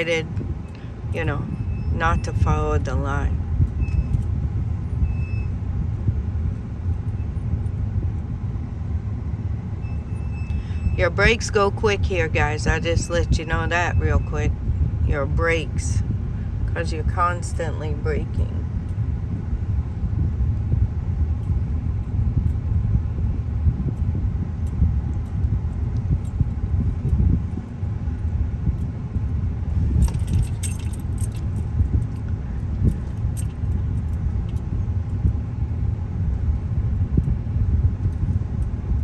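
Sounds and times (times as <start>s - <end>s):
car road noise rumble: 0.0s - 39.0s
light clicks and rattles: 20.6s - 39.0s.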